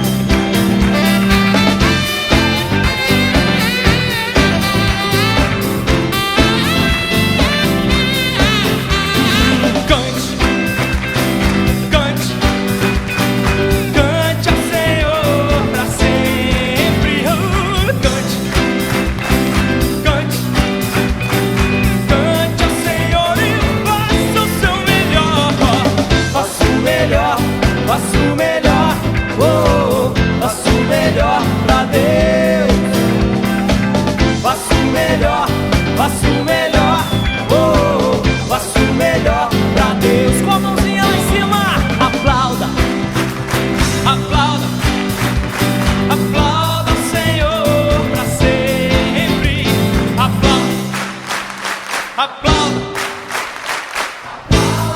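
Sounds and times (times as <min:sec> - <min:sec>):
bass and keyboard: 0:00.0 - 0:53.8, 0:54.5 - 0:54.9
drum kit beat: 0:00.0 - 0:54.9
gospel band playing: 0:00.0 - 0:54.9.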